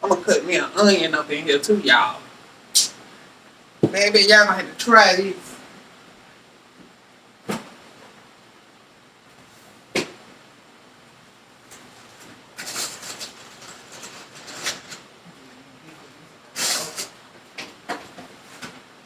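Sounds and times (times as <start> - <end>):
crackly rustling: 11.5 - 19.0.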